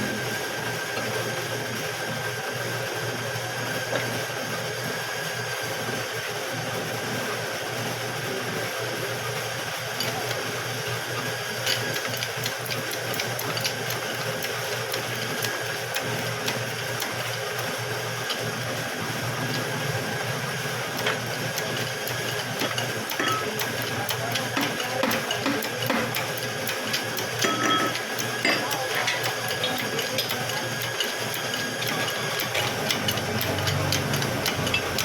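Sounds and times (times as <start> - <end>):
machine humming: 9.3 - 35.0.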